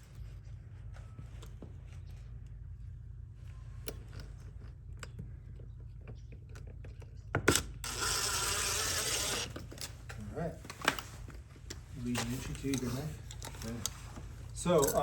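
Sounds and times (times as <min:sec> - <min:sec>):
low steady hum: 0:00.0 - 0:15.0
rasping sound: 0:07.9 - 0:09.6
light clicks and handling noises: 0:09.6 - 0:15.0.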